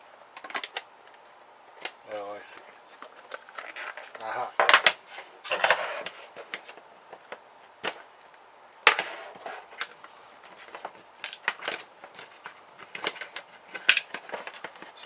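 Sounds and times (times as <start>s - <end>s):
plastic parts clicking and knocking: 0.4s - 1.2s, 9.8s - 15.0s.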